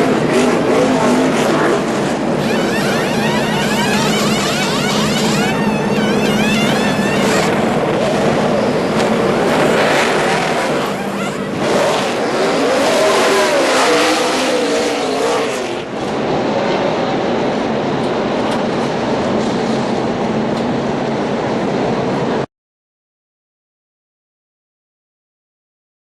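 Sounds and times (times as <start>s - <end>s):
race cars passing at speed: 0.0s - 4.4s, 7.3s - 22.4s.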